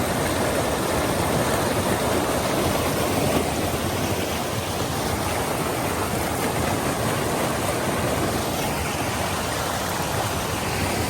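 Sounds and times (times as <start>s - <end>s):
rushing water: 0.0s - 11.0s.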